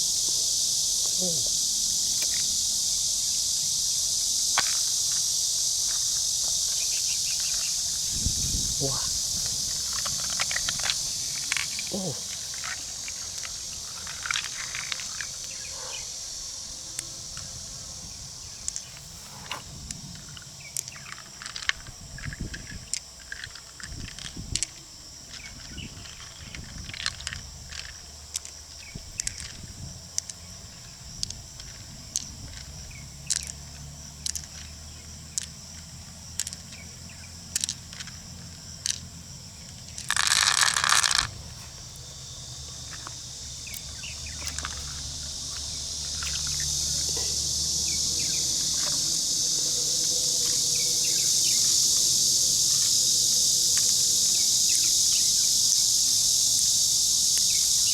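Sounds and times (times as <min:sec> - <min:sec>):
insects chirring: 0:00.0 - 0:57.9
mussel shells clicking and scraping: 0:09.3 - 0:15.7, 0:33.3 - 0:33.6, 0:36.4 - 0:36.8, 0:37.5 - 0:47.3.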